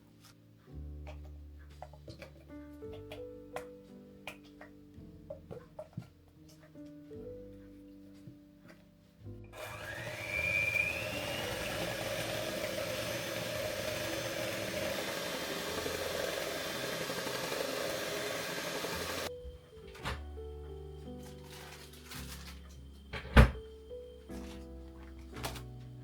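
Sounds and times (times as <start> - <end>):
small appliance motor whining: 9.6 - 19.3.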